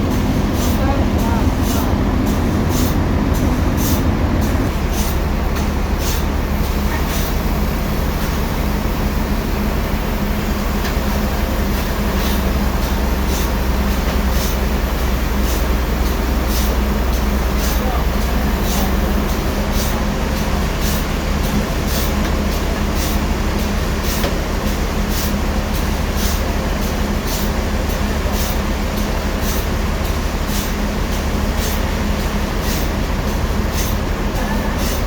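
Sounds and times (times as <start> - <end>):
sawmill machinery humming: 0.0 - 25.7.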